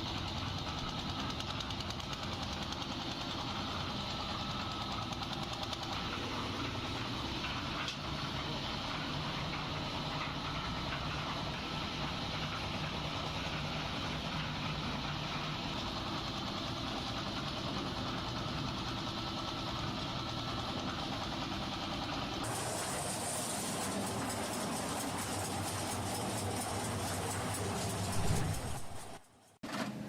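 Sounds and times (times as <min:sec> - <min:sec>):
machine engine running: 0:00.0 - 0:30.0.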